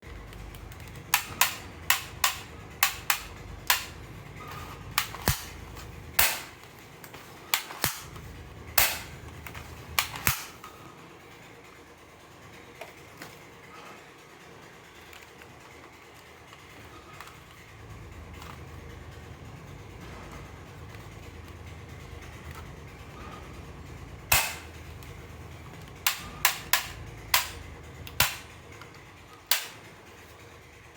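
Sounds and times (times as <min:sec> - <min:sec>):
toy revolver shots: 0:01.0 - 0:04.0, 0:05.0 - 0:05.6, 0:06.2 - 0:06.6, 0:07.6 - 0:08.1, 0:08.8 - 0:09.2, 0:10.0 - 0:10.6, 0:24.3 - 0:24.7, 0:26.1 - 0:28.5, 0:29.5 - 0:29.8.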